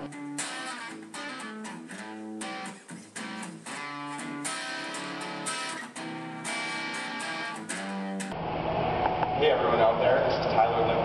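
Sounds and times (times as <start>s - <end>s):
strummed guitar music: 0.0s - 8.4s.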